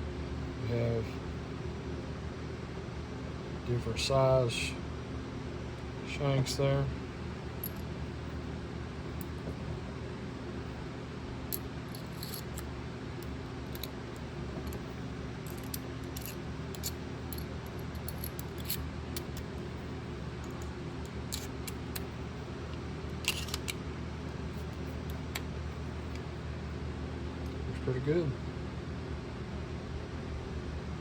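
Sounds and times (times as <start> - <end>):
steady low hum: 0.0 - 31.0
screwdriver bits clicking: 11.5 - 12.6, 13.7 - 13.9, 15.5 - 19.5, 21.3 - 22.1.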